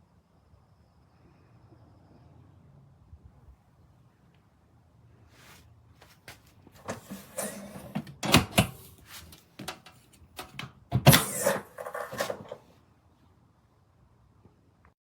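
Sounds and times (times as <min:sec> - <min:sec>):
metal tool box clunks and rattles: 0:06.8 - 0:12.6.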